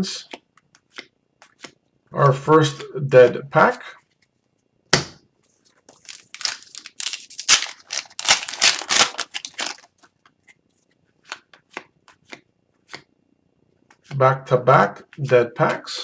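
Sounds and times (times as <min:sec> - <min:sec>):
wrapper crinkling: 0:05.9 - 0:10.1.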